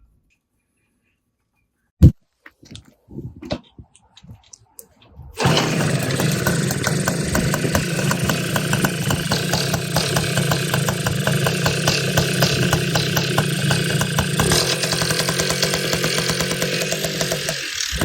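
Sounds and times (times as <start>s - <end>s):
moped engine running: 5.4s - 18.0s.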